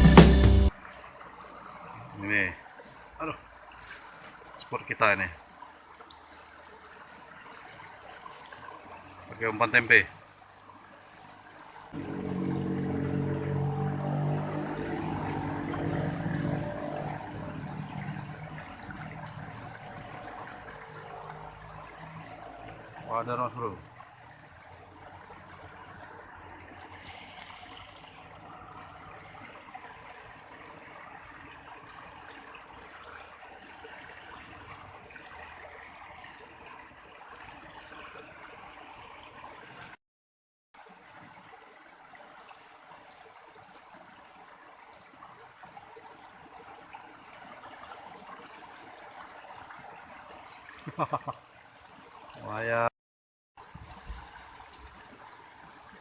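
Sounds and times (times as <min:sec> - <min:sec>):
water rushing and trickling: 0:00.0 - 0:40.0, 0:40.8 - 0:52.9, 0:53.6 - 0:56.0.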